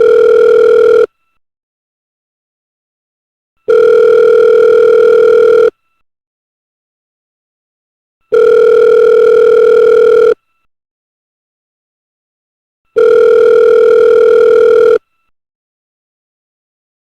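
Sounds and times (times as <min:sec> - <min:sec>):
telephone ringback tone: 0:00.0 - 0:01.1, 0:03.7 - 0:05.8, 0:08.3 - 0:10.4, 0:12.9 - 0:15.1.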